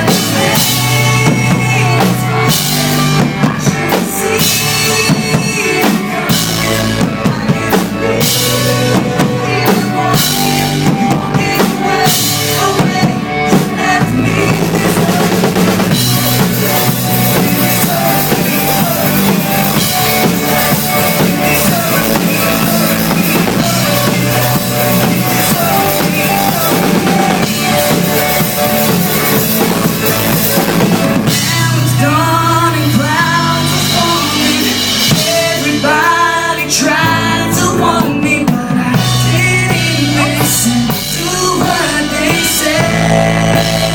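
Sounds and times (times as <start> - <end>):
bass drum and snare beat: 0.0 - 32.3
pop-rock band playing live: 0.0 - 43.9.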